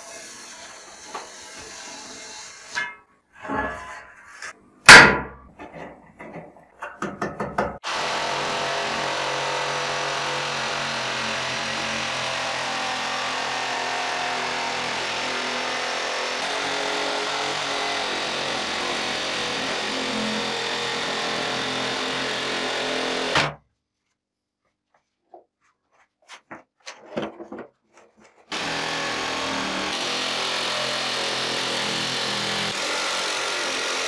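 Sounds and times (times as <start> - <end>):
jigsaw cutting wood: 7.8 - 23.6, 28.5 - 34.0.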